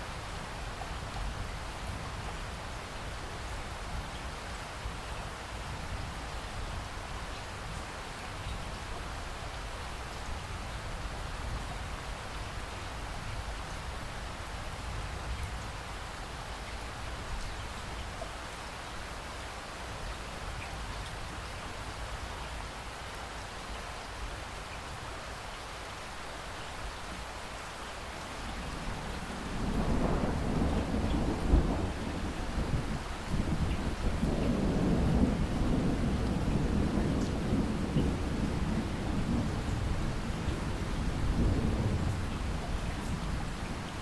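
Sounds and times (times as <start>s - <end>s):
steady rain: 0.0s - 44.0s
thunder rolling: 29.4s - 40.0s.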